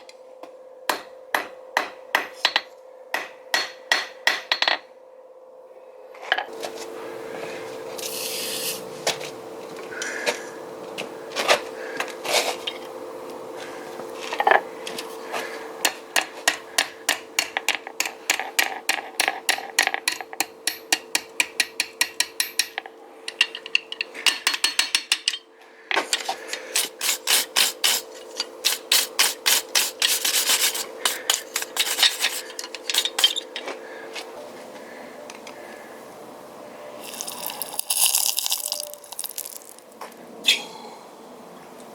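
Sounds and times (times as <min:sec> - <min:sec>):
hammer striking steel on anvil: 0:00.9 - 0:04.8.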